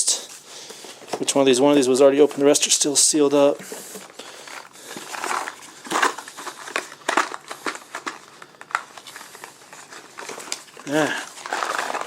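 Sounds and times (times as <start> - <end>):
cardboard boxes being handled: 3.6 - 12.0.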